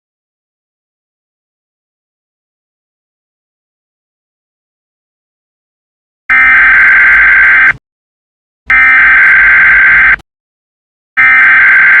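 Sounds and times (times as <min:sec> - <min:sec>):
data tone bursts: 0:06.3 - 0:07.8, 0:08.7 - 0:10.2, 0:11.2 - 0:12.0.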